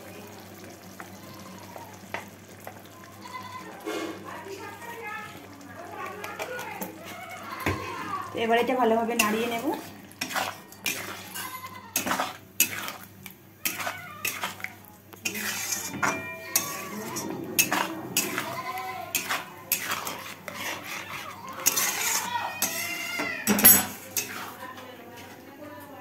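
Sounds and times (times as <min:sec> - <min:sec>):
spatula scraping metal pan: 0:09.1 - 0:24.6.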